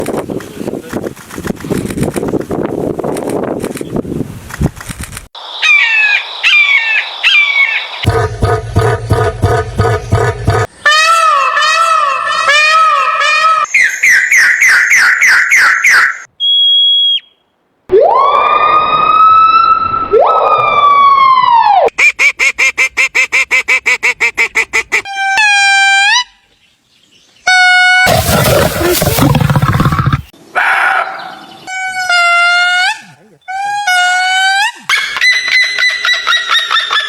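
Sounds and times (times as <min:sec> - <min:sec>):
loud harsh animal call: 0:28.0 - 0:34.7
falling chirps: 0:28.1 - 0:30.3.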